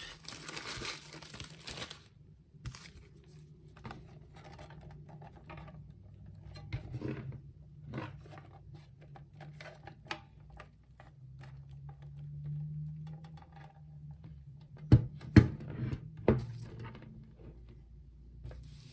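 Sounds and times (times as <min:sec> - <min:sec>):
packaging rustling: 0:00.0 - 0:03.1.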